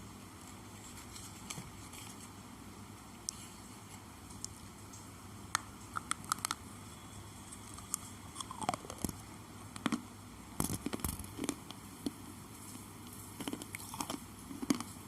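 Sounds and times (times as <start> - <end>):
pencils being bitten and chewed: 6.0 - 6.6, 7.6 - 10.0, 10.6 - 12.2, 13.0 - 15.0.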